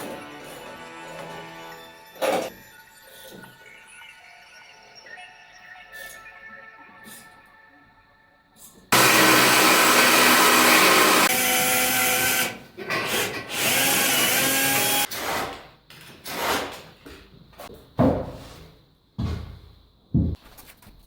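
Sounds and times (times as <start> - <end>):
electric drill running: 9.0 - 15.1.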